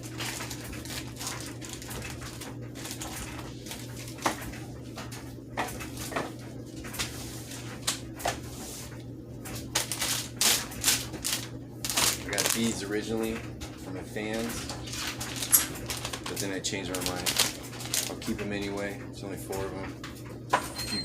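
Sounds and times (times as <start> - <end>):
clicks and rustles of packaging: 0.0 - 6.3, 9.7 - 13.4, 14.4 - 18.4
steady low hum: 0.0 - 21.0.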